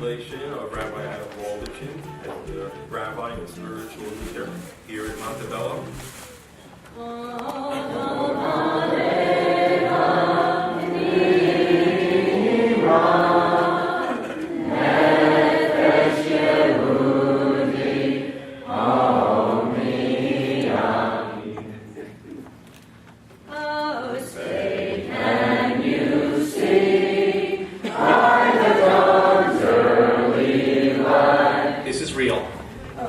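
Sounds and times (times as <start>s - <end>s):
choir singing: 7.6s - 21.9s, 23.5s - 32.0s.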